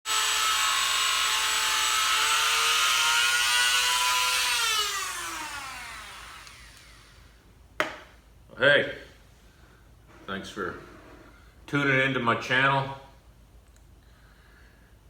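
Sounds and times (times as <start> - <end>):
rotary tool whining: 0.1 - 7.3.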